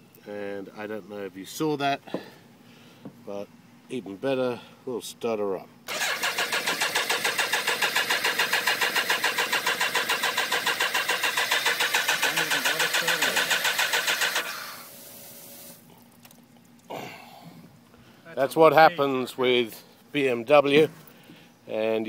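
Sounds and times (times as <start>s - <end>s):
motorcycle engine cranking: 5.9s - 14.6s.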